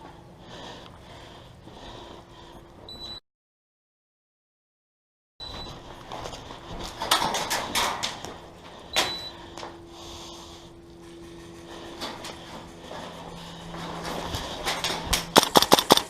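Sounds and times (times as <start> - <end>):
sharp clacks and knocks: 14.6 - 16.0.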